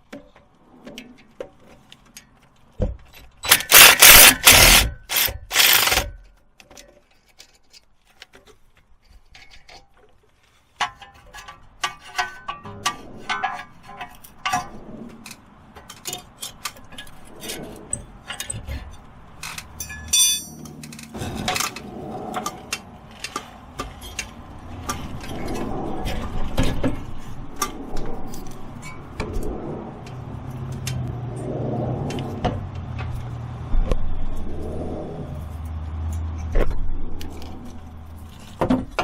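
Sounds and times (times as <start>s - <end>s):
metal tools clinking: 19.4s - 21.1s
metallic ring: 19.8s - 20.8s.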